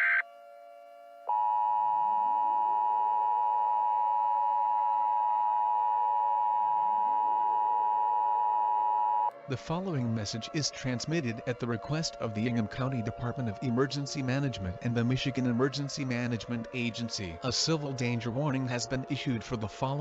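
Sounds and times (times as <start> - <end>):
two-tone alert signal: 0.0 - 0.2.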